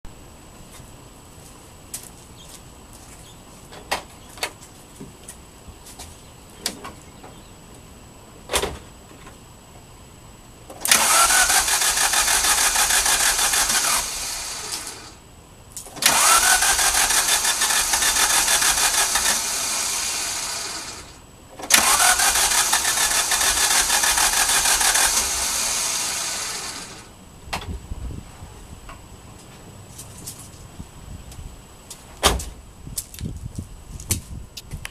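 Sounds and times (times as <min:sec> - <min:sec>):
starter motor cranking engine: 0:10.8 - 0:15.2, 0:16.0 - 0:27.1.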